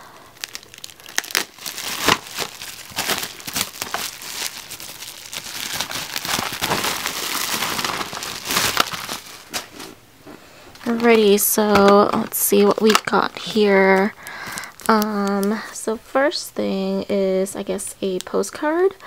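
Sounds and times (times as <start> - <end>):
packaging wrap crinkling: 0.0 - 10.0, 10.8 - 15.6.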